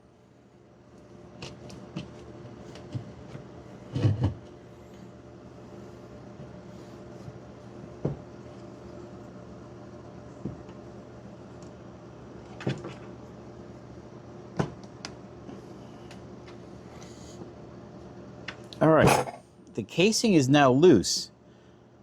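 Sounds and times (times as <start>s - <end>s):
steady low hum: 18.7s - 20.1s.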